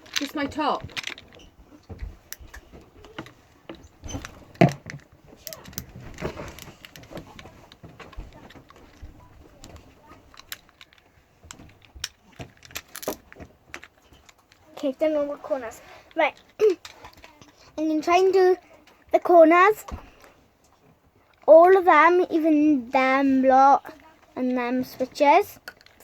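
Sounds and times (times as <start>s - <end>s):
plastic knock: 1.9s - 9.8s.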